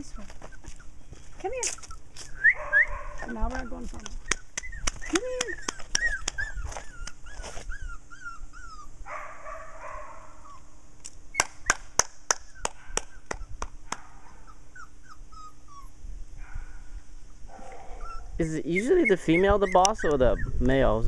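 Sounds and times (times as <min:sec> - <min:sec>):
puppies whimpering and yipping: 0:01.7 - 0:09.0, 0:14.4 - 0:16.0, 0:17.6 - 0:21.0.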